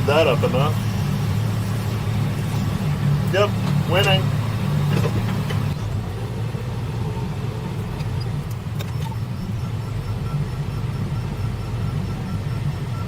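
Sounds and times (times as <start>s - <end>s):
diesel engine running: 0.0s - 13.0s
faint high beeping: 8.1s - 13.0s.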